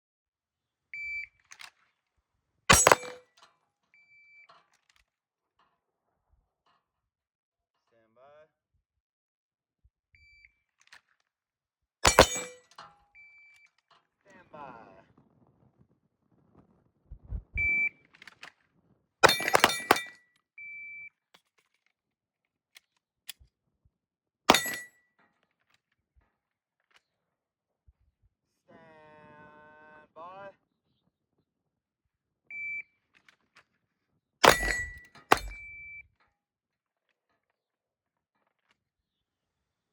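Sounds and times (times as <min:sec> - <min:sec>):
pistol shots: 0:02.7 - 0:03.2, 0:34.4 - 0:35.6
short electronic beep: 0:17.6 - 0:17.9.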